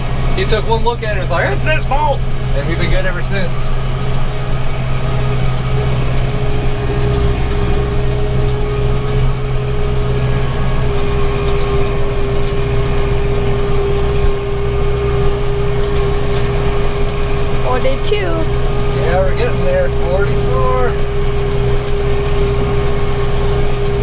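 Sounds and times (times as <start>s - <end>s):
baler whine: 0.0s - 24.0s
tractor engine running under load: 0.0s - 24.0s.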